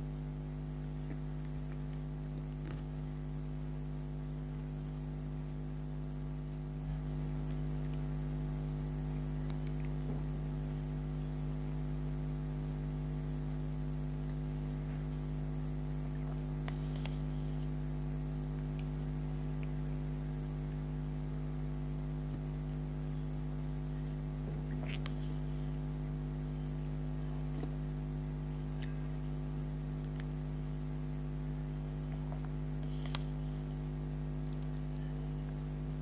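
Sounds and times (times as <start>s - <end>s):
electrical hum: 0.0s - 36.0s
chewing clicks: 0.8s - 3.0s, 7.4s - 10.4s, 27.4s - 27.8s, 32.0s - 35.6s.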